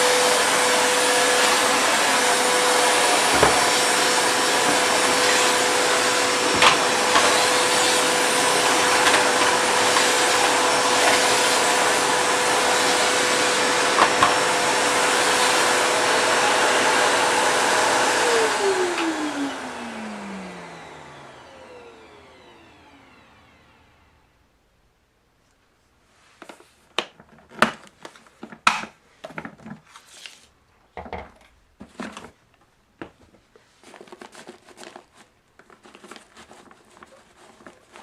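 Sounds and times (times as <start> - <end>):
vacuum cleaner whining: 0.0 - 24.5
dirt rattling up vacuum hose: 1.0 - 17.1.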